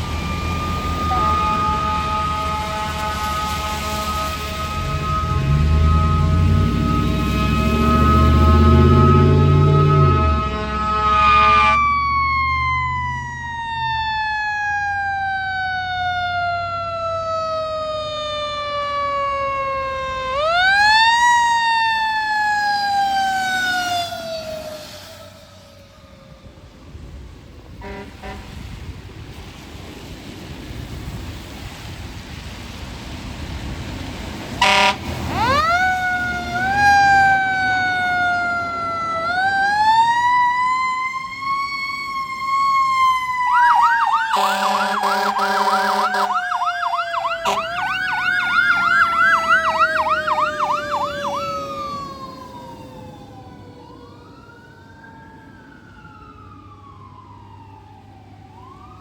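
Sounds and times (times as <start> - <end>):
fire engine horn blasts: 0.0 - 12.1, 27.7 - 29.0, 34.6 - 37.8, 43.5 - 51.4
fainter distant siren: 0.0 - 30.3, 32.4 - 59.0
fire engine siren wailing: 0.0 - 59.0.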